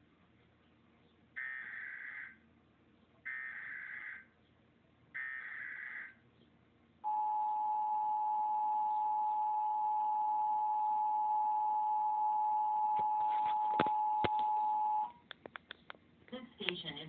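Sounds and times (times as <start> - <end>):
two-tone alert tone: 7.1 - 15.1
sharp clicks: 15.2 - 16.0.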